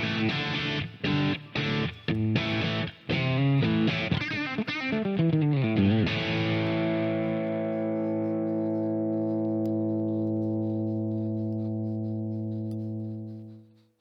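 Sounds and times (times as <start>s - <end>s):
distorted electric guitar: 0.0s - 8.0s.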